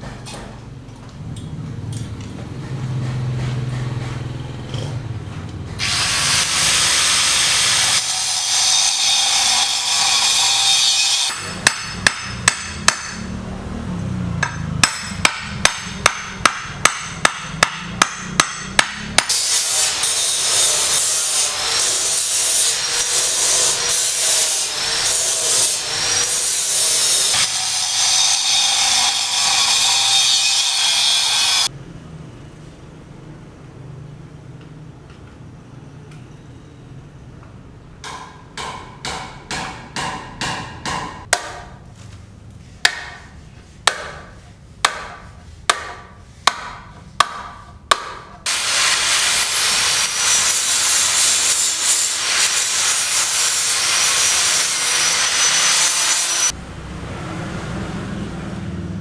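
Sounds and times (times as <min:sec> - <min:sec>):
rasping hand tool: 0:05.8 - 0:13.1, 0:16.1 - 0:31.7, 0:48.5 - 0:56.6.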